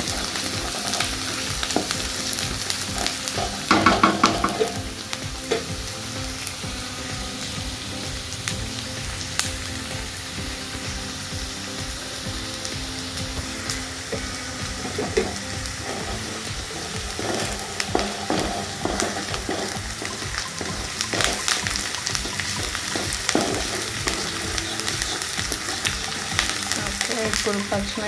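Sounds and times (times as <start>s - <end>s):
onions sizzling in hot oil: 0.0s - 28.0s
spatula scraping a pan: 14.2s - 27.6s.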